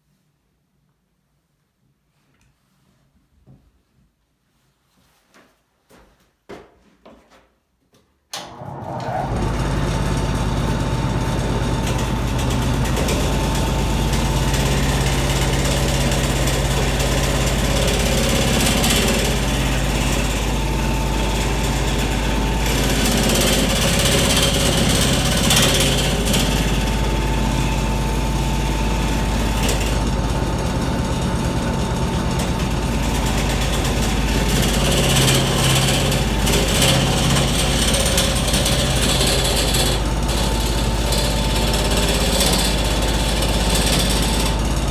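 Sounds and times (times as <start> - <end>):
wood lathe humming: 8.4 - 44.9
turning tool scraping wood: 9.4 - 28.0, 28.7 - 44.9.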